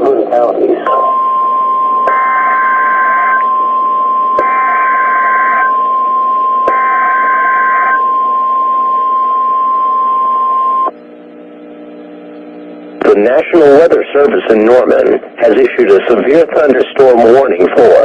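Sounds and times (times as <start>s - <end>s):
loud single alarm tone: 0.9s - 11.0s
screeching digital data bursts: 1.0s - 10.9s.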